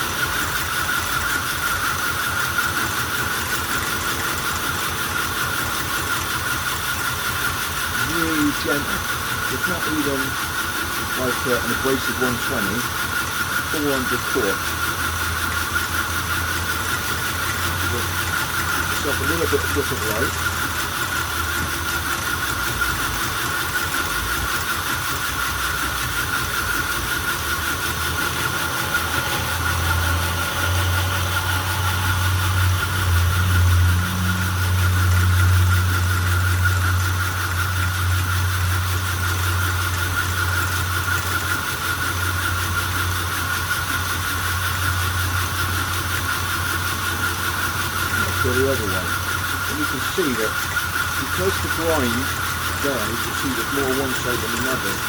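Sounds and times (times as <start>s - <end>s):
belt grinder whine: 0.0s - 55.0s
low hum: 26.1s - 37.4s.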